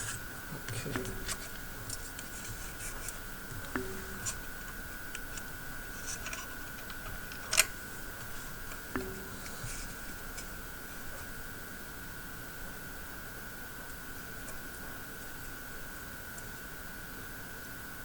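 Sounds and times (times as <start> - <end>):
hand tools clicking and tapping: 0.7 - 10.5.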